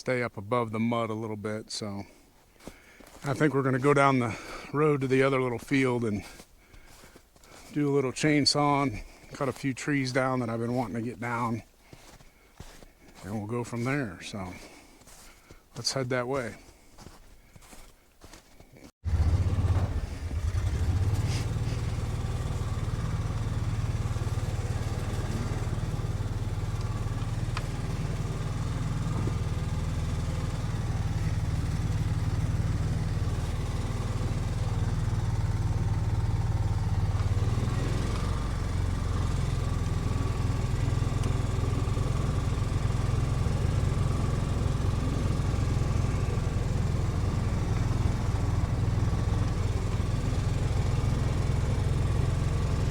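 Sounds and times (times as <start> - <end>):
utility vehicle engine running: 19.0 - 52.9.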